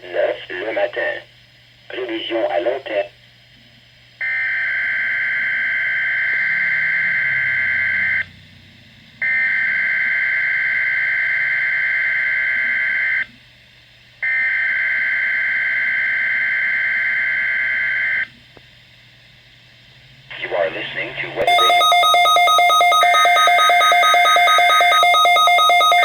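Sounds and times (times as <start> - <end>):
two-tone digital data warble: 21.5 - 26.0.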